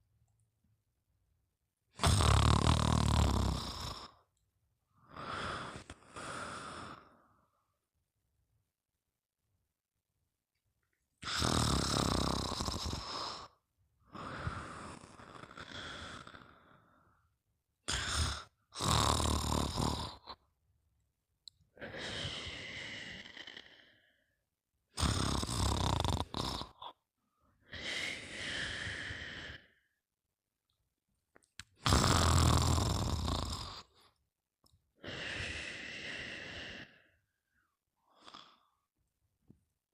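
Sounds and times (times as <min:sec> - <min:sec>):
deep snoring: 0:02.0 - 0:04.2, 0:11.2 - 0:13.6, 0:14.2 - 0:17.1, 0:17.9 - 0:20.4, 0:25.0 - 0:27.0, 0:31.8 - 0:34.0.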